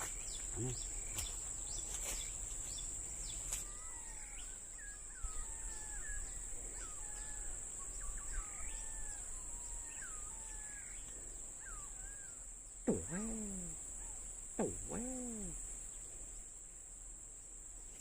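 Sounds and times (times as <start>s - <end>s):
birds chirping: 0.0s - 16.1s
high-pitched insect drone: 12.9s - 15.8s.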